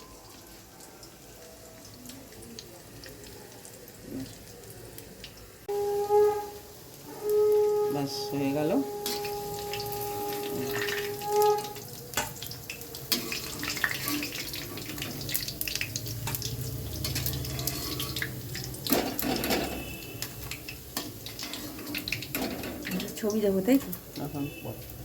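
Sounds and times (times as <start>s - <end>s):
food deep-frying in oil: 0.0s - 25.0s
oil crackling: 9.0s - 25.0s.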